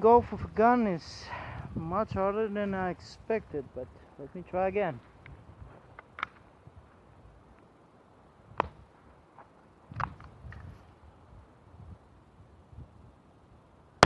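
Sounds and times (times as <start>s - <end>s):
rifle handling clicks and knocks: 5.9s - 6.5s.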